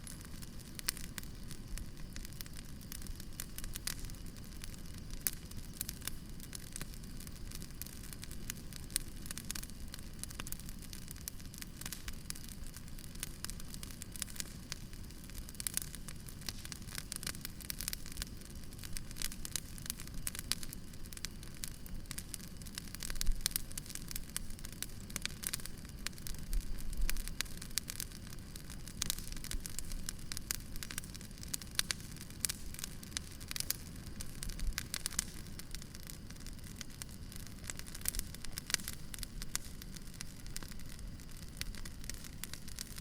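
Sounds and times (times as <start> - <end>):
firewood crackling and popping: 0.0 - 43.0
low rustle of fire: 0.0 - 43.0.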